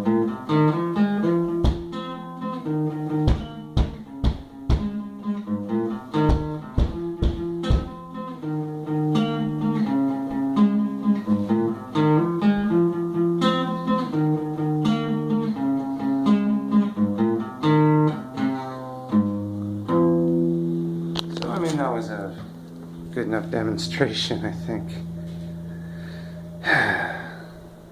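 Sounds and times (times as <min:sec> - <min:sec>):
guitar playing: 0:00.0 - 0:27.9
sharp thumps: 0:01.5 - 0:02.0, 0:03.2 - 0:05.1, 0:06.2 - 0:08.1.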